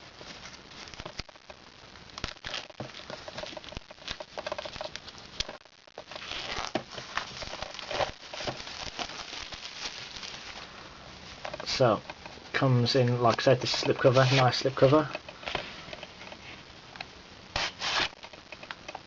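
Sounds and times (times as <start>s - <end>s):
plastic shrink-wrap crinkling and tearing: 0.1s - 11.9s, 17.5s - 18.8s.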